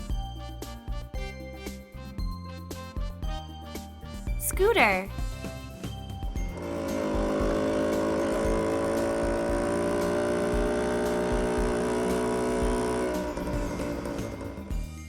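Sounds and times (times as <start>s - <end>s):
motor scooter engine running: 6.2s - 15.0s.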